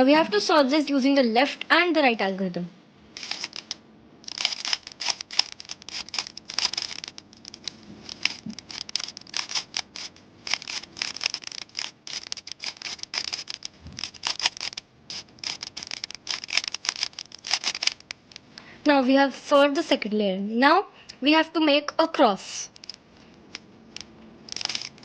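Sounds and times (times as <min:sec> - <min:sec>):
puzzle cube plastic clicks: 0:03.2 - 0:18.7, 0:22.7 - 0:25.0.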